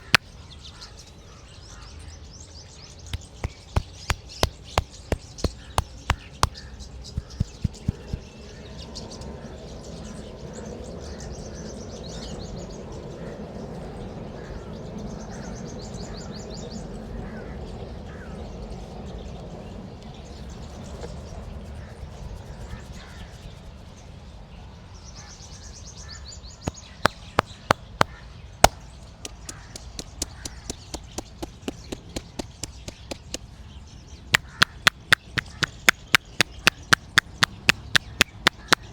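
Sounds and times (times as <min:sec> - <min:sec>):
hands slapping and tapping: 0:00.0 - 0:00.2, 0:03.2 - 0:06.6, 0:07.2 - 0:08.2, 0:26.7 - 0:33.4, 0:34.4 - 0:38.9
birds chirping: 0:00.0 - 0:01.2, 0:01.8 - 0:09.0, 0:26.6 - 0:38.9.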